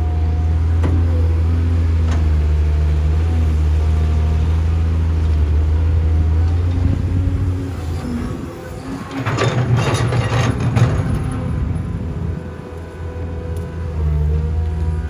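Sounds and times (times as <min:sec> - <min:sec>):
heavy diesel engine droning: 0:00.0 - 0:15.0.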